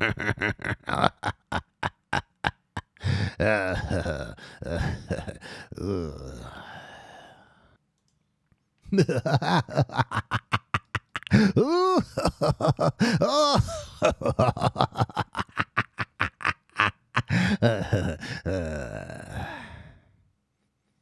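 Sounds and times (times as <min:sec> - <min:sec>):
man cackling laugh: 0:00.0 - 0:06.4, 0:08.9 - 0:19.6.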